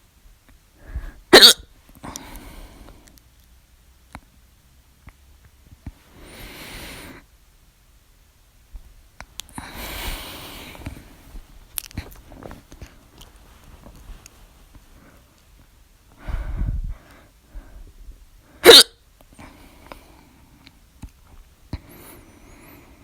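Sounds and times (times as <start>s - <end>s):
woman hiccuping: 1.3s - 1.6s, 18.6s - 19.0s
soft noises: 8.6s - 18.6s.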